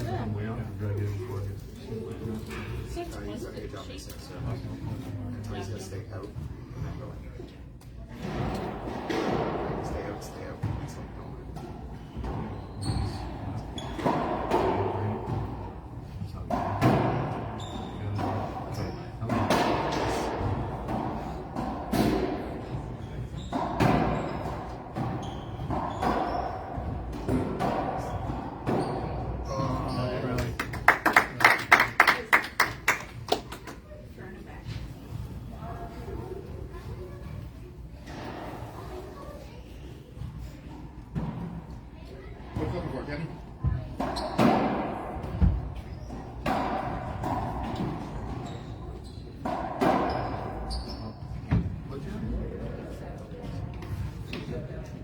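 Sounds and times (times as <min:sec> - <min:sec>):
ball hitting racquets and walls: 0:08.2 - 0:30.8, 0:43.7 - 0:51.8
short high shoe squeaks: 0:12.6 - 0:14.1, 0:17.6 - 0:19.1, 0:25.2 - 0:26.7, 0:50.1 - 0:51.4.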